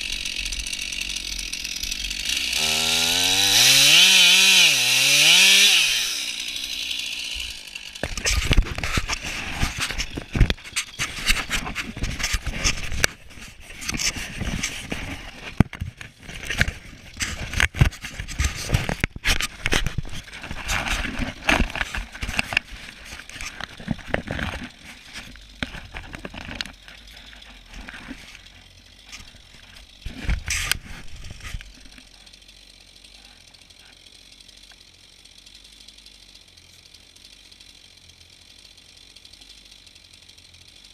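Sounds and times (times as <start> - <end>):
chainsaw cutting whine: 0.0 - 40.9
knocks scrapes and crackles: 2.1 - 32.2.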